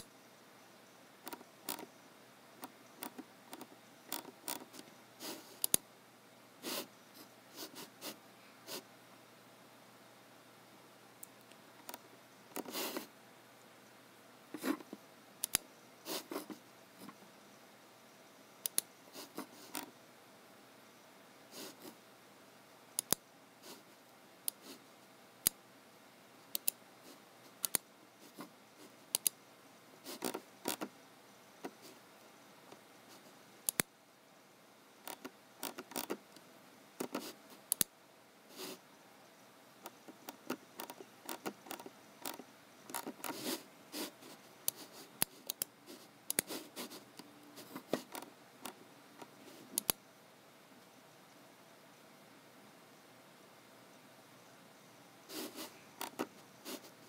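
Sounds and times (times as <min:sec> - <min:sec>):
faint room hiss: 0:00.0 - 0:57.0
keyboard and mouse clicking: 0:14.6 - 0:15.7, 0:18.6 - 0:18.9, 0:23.0 - 0:23.2, 0:26.5 - 0:26.8, 0:27.6 - 0:27.8, 0:29.1 - 0:29.4, 0:35.1 - 0:36.4, 0:39.9 - 0:43.4, 0:47.2 - 0:50.0, 0:56.0 - 0:56.3.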